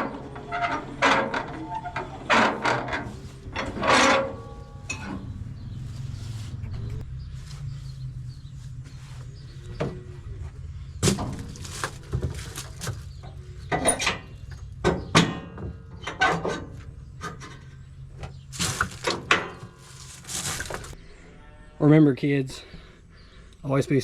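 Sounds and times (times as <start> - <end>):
metal clanks and rattles: 0.0 - 5.8, 11.0 - 21.0.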